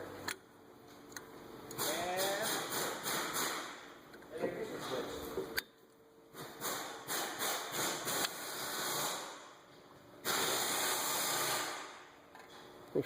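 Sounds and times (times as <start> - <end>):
hiss: 10.2 - 11.9.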